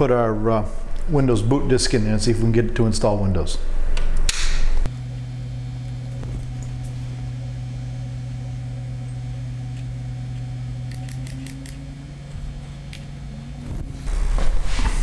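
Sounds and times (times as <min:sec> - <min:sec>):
computer low hum: 0:04.8 - 0:15.0.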